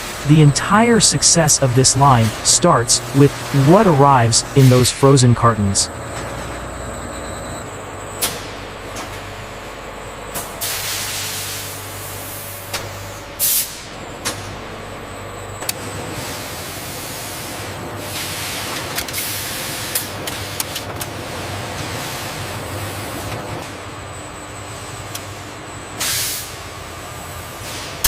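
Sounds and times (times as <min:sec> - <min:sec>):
machinery hum: 0:00.0 - 0:18.2.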